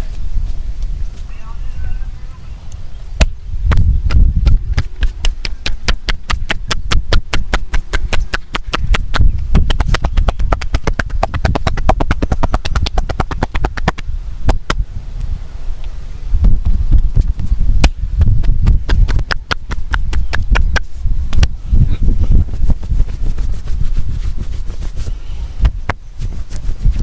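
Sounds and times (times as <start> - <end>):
hand taps of percussive massage: 3.7 - 14.0.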